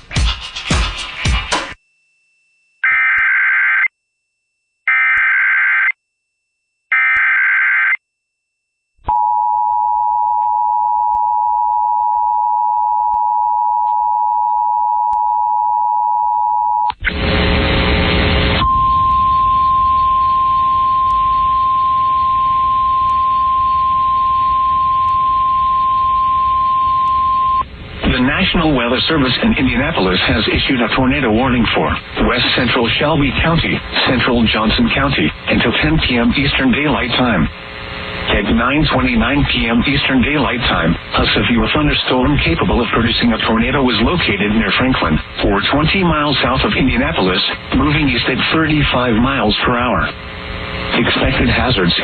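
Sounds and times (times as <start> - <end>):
radio static: 16.9 - 25.0, 26.9 - 52.0
two-tone attention signal: 18.6 - 27.6.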